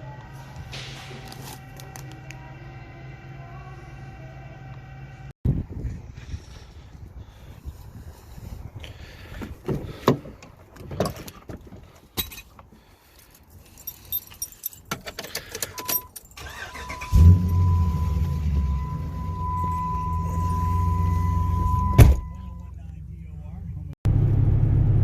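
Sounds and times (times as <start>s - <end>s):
keys jangling: 12.0s - 16.5s
truck engine starting and idling: 15.1s - 25.0s
steady warning tone: 15.8s - 22.9s.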